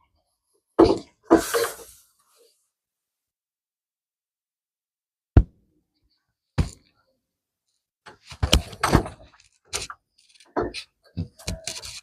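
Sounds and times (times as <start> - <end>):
scraping on roof tile: 8.5 - 12.0.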